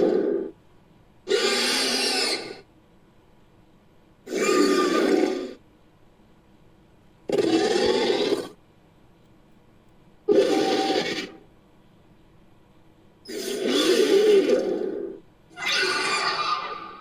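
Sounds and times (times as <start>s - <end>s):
harsh animal calls: 0.0s - 0.6s, 1.2s - 2.7s, 4.2s - 5.6s, 7.3s - 8.6s, 10.3s - 11.5s, 13.2s - 17.0s.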